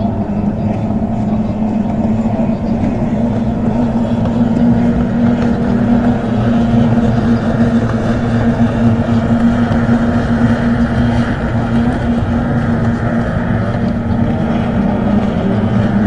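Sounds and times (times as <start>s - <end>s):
motorboat engine running: 0.0s - 16.0s.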